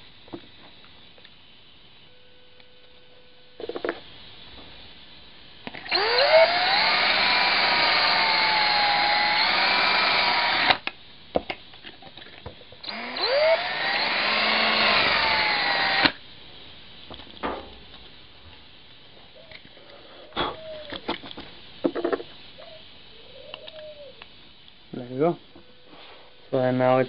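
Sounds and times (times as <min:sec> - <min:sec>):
electric drill whining: 0:05.8 - 0:10.9, 0:12.8 - 0:16.2.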